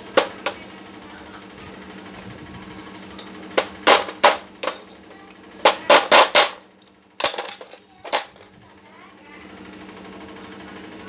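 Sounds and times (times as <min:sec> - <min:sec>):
sharp knocks of impact wrench: 0:00.0 - 0:00.7, 0:03.2 - 0:08.4
steady low hum: 0:00.0 - 0:11.0.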